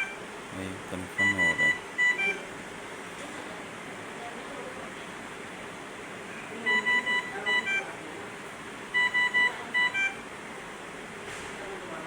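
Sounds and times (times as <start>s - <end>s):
electronic alarm beeps: 1.2s - 2.4s, 6.6s - 7.9s, 9.0s - 10.2s.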